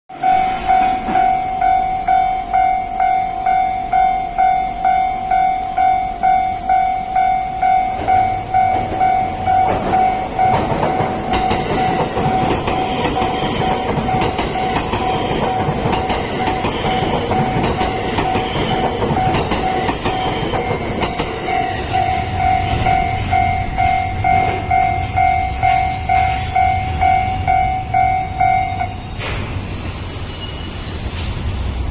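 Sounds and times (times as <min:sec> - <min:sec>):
level-crossing bell ringing: 0:00.1 - 0:29.1
train passing with clattering wheels: 0:00.1 - 0:31.9.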